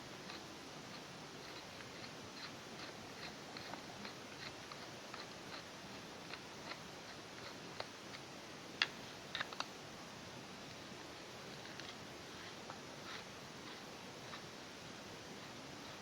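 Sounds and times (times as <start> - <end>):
small tool clicks and ticks: 6.3 - 9.7.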